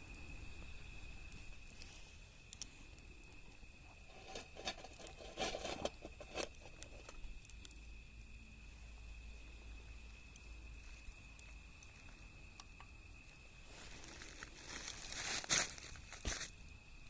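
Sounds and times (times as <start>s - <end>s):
wood fire crackling and popping: 0.1s - 8.3s
rustling: 3.9s - 7.2s, 13.7s - 16.5s.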